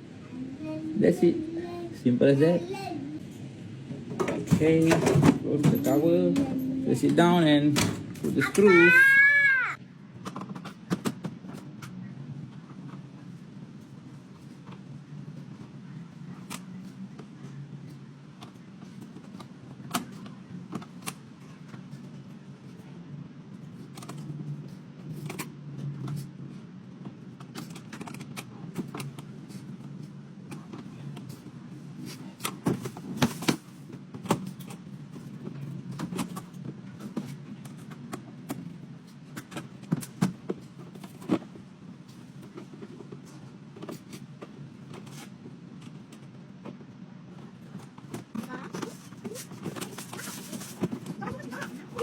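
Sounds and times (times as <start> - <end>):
steady low hum: 0.0 - 10.1.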